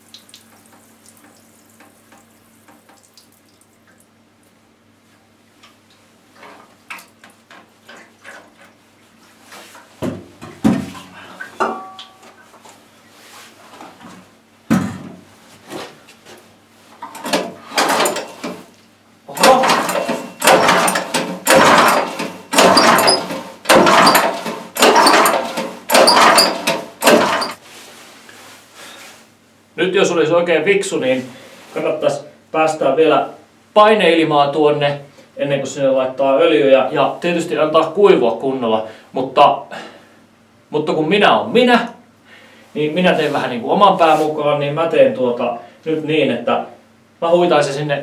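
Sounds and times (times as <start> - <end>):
clicks and knocks: 19.4 - 27.6.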